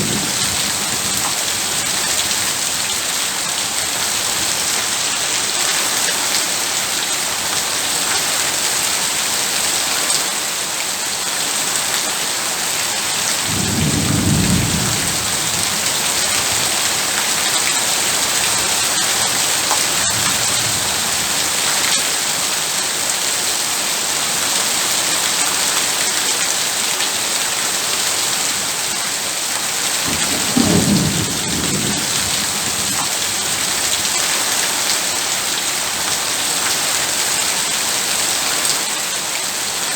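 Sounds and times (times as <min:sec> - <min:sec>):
thunder rumble: 0:00.0 - 0:02.7, 0:13.5 - 0:17.0, 0:30.1 - 0:34.0
heavy rain: 0:00.0 - 0:39.9.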